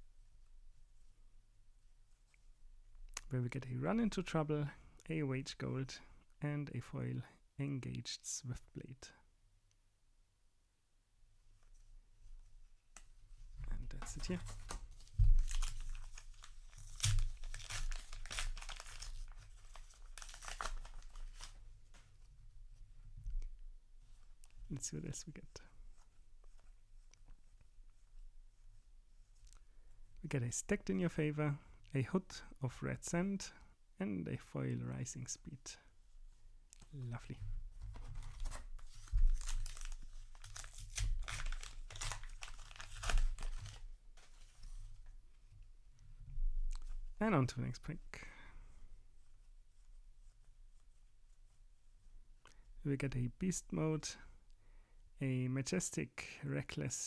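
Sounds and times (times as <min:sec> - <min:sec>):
wrapper tearing and crinkling: 0:14.2 - 0:21.6, 0:38.1 - 0:44.4.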